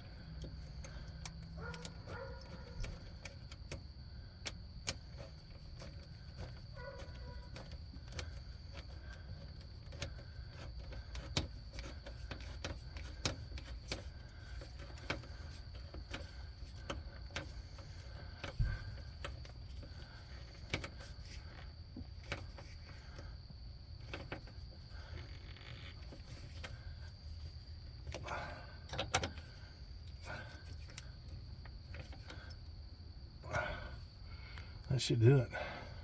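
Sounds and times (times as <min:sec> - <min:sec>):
steady low hum: 0:00.0 - 0:36.0.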